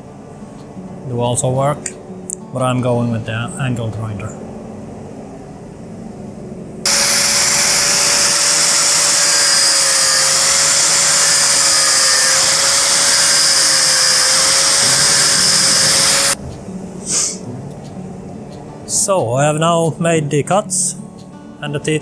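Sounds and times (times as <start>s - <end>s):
angle grinder cutting metal: 6.9s - 16.4s.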